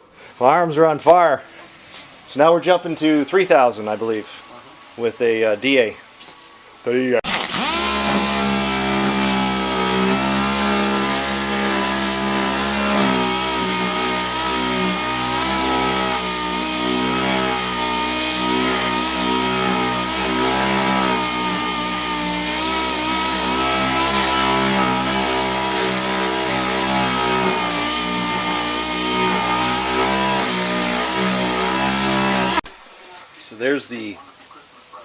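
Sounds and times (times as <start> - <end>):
polisher motor humming: 7.3 - 32.7
sanding pad hissing: 7.4 - 32.7.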